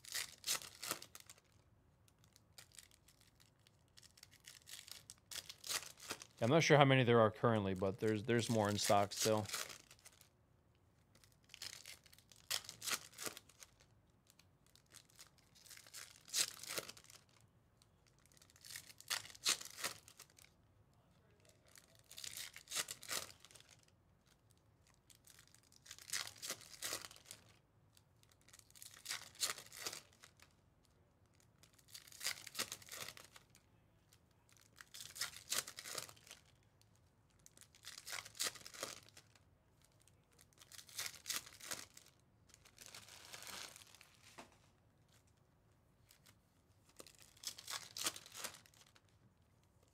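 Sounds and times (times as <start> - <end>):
foil wrappers being torn open: 0.0 - 1.6, 2.2 - 6.4, 11.2 - 17.4, 18.2 - 20.5, 21.5 - 23.8, 25.0 - 27.5, 28.2 - 30.4, 31.6 - 33.6, 34.6 - 36.5, 37.4 - 39.4, 40.4 - 44.0, 47.0 - 49.1.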